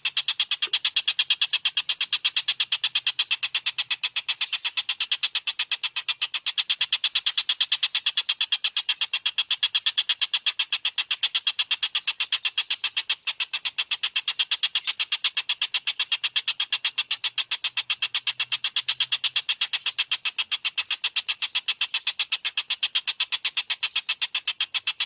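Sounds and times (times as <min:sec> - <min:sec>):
kingfisher calling: 0:00.0 - 0:09.0.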